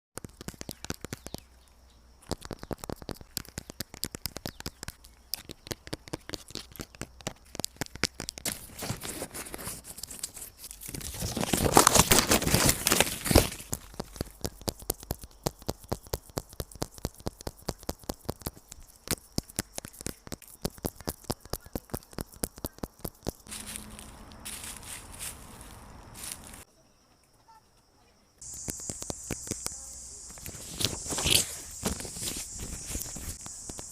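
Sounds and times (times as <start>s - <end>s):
scratching and crinkling: 2.2s - 26.6s, 28.4s - 33.9s
light sharp tapping: 28.4s - 33.9s.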